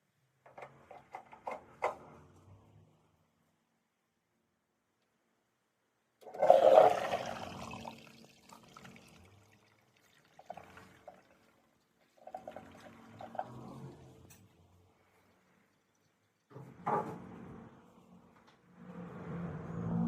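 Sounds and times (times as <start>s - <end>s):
toilet flushing: 6.2s - 17.3s.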